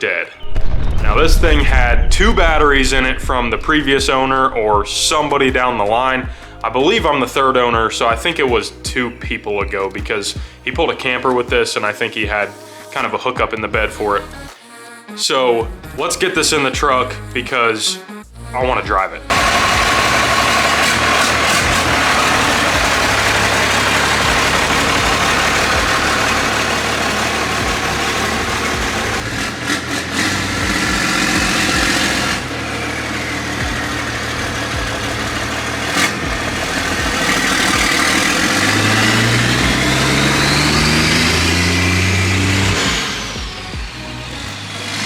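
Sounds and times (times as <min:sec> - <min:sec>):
high turbo whistle: 0:00.4 - 0:07.6, 0:19.3 - 0:45.0
diesel engine running: 0:00.4 - 0:11.3, 0:18.6 - 0:45.0.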